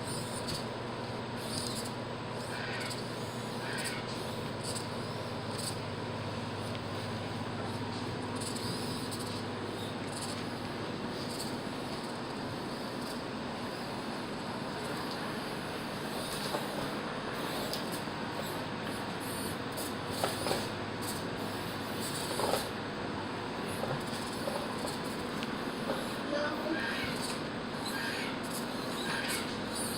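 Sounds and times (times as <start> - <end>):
toy car motor whirring: 0.0 - 0.6, 1.4 - 5.8, 8.4 - 10.5, 11.2 - 12.2, 24.0 - 29.9.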